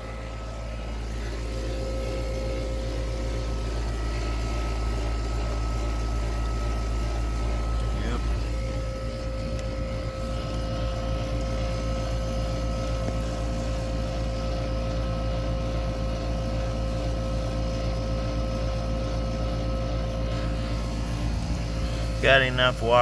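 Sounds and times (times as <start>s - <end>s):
air conditioner running: 0.0s - 23.0s.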